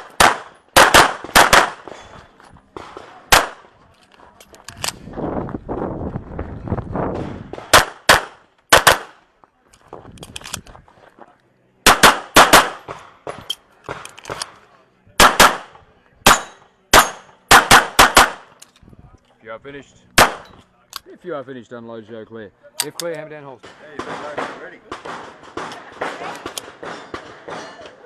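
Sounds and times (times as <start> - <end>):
handgun shots: 11.9 - 14.6, 15.2 - 18.5.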